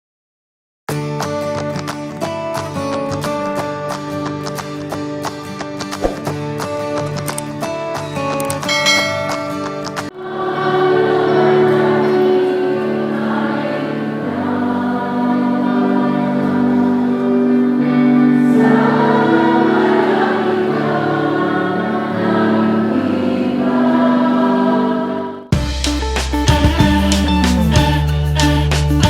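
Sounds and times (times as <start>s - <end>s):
choir singing held chords: 8.7s - 29.0s.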